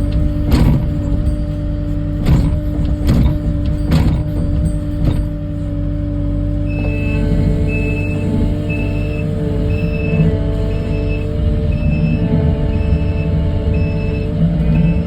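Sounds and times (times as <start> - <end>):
diesel engine running: 0.0 - 15.0
reversing alarm beeping: 6.6 - 15.0.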